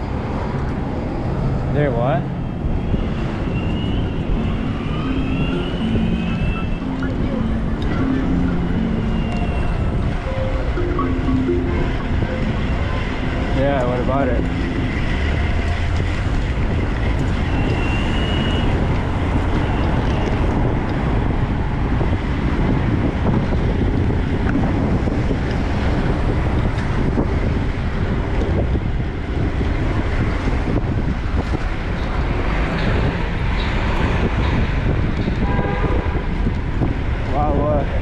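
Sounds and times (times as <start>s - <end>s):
road and traffic noise: 0.0s - 38.0s
wind rushing over microphone: 0.0s - 38.0s.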